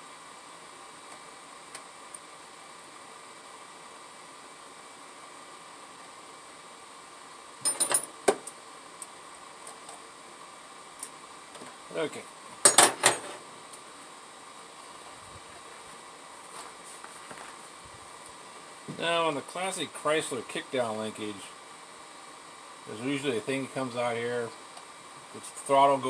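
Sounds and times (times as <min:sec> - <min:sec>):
faint steady hum: 0:00.0 - 0:26.0
metallic clinks of tools: 0:07.6 - 0:08.1, 0:12.7 - 0:13.4.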